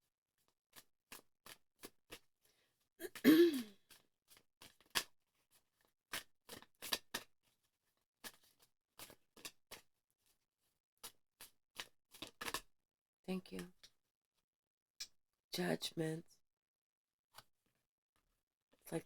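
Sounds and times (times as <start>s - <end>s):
person clearing throat: 3.0s - 3.7s.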